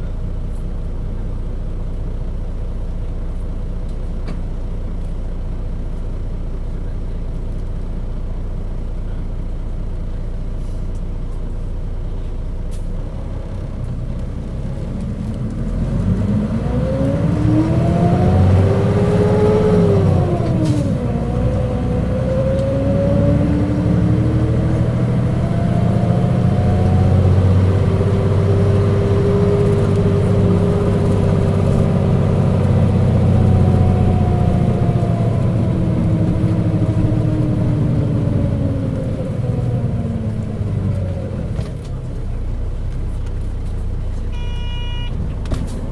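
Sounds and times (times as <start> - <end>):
bus engine rumble: 0.0 - 45.9
bus whine rising in pitch: 14.4 - 43.2, 43.8 - 45.8.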